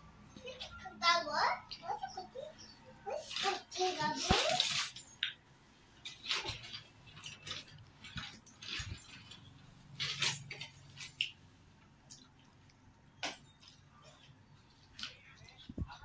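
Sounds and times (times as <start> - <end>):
small clinking: 6.0 - 11.4.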